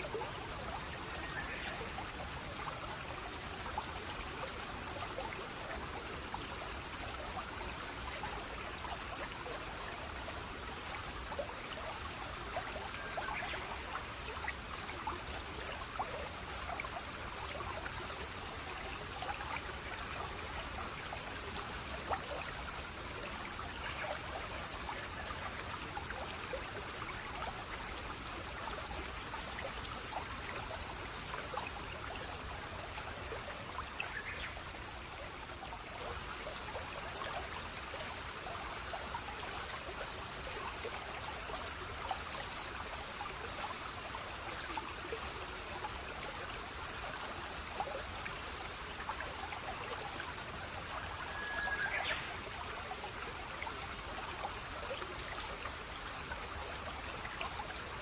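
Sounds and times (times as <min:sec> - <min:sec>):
stream water trickling: 0:00.0 - 0:58.0
faint bird chirps: 0:50.9 - 0:52.4.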